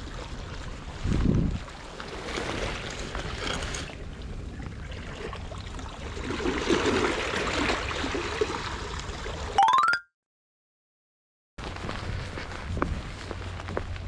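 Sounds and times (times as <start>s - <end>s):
trickling water: 0.0s - 9.9s.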